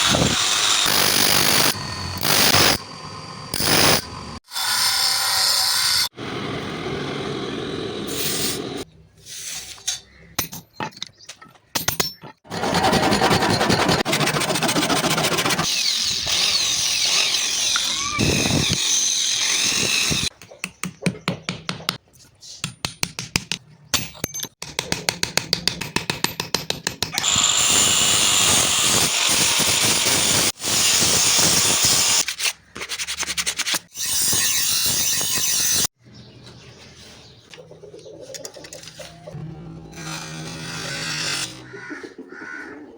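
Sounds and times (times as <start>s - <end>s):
power tools working steel: 0.0s - 8.8s, 12.5s - 20.3s, 27.2s - 32.2s, 39.4s - 41.7s.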